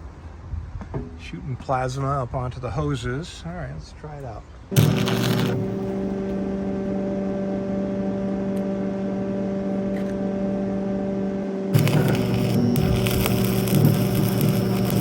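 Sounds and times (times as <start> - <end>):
machine hum: 4.7 - 15.0
plasma torch hissing: 4.8 - 6.0, 11.8 - 15.0.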